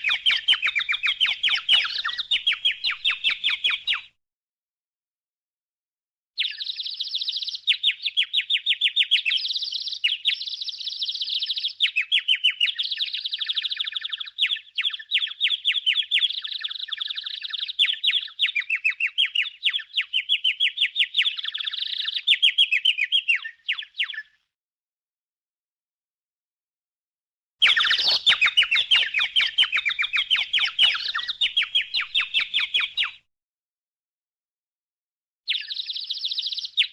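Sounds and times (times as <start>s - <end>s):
cartoon tweeting birds: 0.0s - 4.1s, 6.4s - 24.3s, 27.6s - 33.2s, 35.5s - 36.9s.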